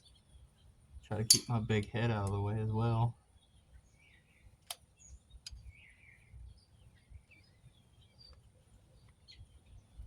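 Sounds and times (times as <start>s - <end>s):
faint bird chirps: 3.1s - 10.0s.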